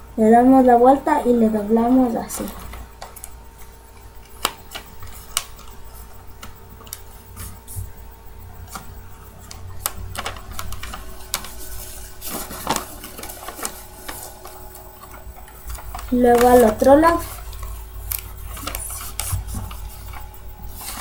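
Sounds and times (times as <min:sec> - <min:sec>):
steady low hum: 0:00.0 - 0:21.0
paper being folded and creased: 0:08.6 - 0:21.0.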